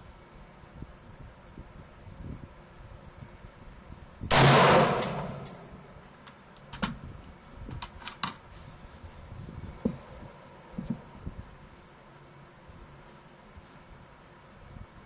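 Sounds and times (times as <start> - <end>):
loud gunshot: 4.3 - 5.4
metallic clinks and knocks: 5.0 - 6.1.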